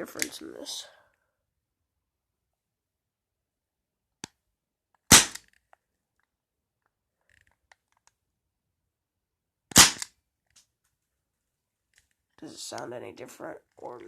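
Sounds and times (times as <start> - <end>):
bb pistol shot: 5.1 - 5.4, 9.7 - 10.1.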